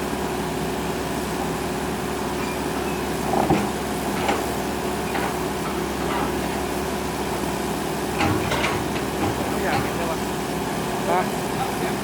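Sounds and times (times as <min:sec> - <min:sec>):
diesel engine running: 0:00.0 - 0:12.0
metal clanks: 0:03.3 - 0:06.7, 0:08.2 - 0:10.2.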